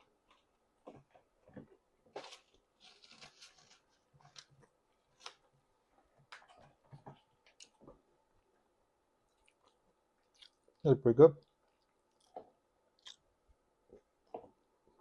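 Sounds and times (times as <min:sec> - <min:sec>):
person chewing: 0:09.2 - 0:10.8, 0:11.4 - 0:13.3.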